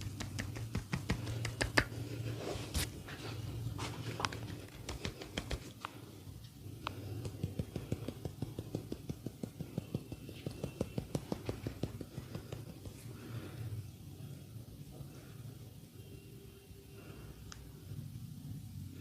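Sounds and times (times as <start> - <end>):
hands tapping and patting: 0.0 - 2.2, 3.8 - 6.0, 6.8 - 13.3
low steady hum: 0.0 - 19.0.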